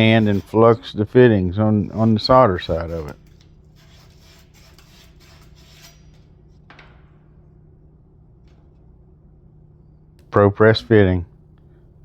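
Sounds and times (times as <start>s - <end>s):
light rubbing: 0.0s - 7.0s
steady low hum: 0.0s - 12.0s.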